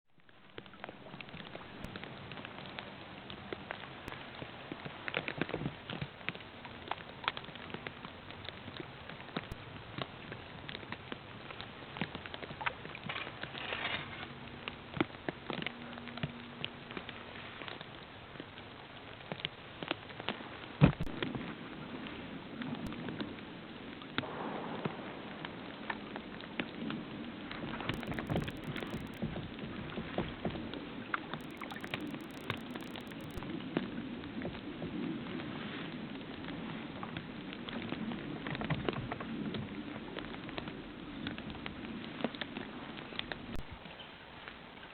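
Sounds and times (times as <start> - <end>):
soft steady hiss: 0.2 - 29.9, 30.6 - 34.4
faint steady hum: 0.2 - 44.0.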